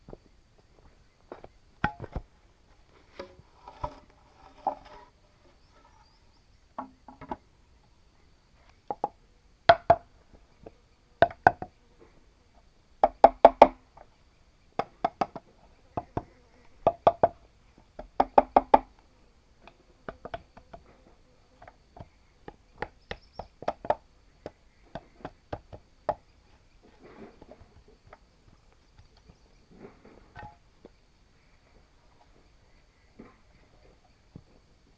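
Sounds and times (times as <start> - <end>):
hollow knocks on bamboo: 1.3 - 2.3, 3.0 - 5.1, 6.8 - 7.4, 8.9 - 10.1, 13.0 - 13.8, 14.8 - 17.4, 30.3 - 30.6
soft scraping: 1.9 - 6.3.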